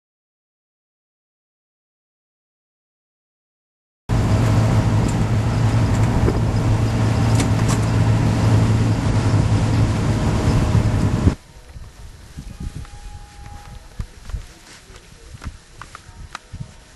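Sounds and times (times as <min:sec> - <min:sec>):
loud vehicle engine running: 0:04.1 - 0:11.4.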